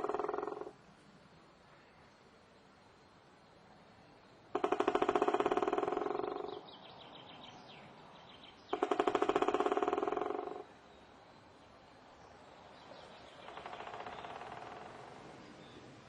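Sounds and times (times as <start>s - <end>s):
woodpecker drumming on wood: 0.0s - 0.8s, 4.5s - 6.7s, 8.7s - 10.8s, 13.4s - 15.3s
low city background hum: 0.6s - 4.6s, 6.4s - 8.7s, 10.4s - 16.0s
bird chirps: 4.0s - 16.0s.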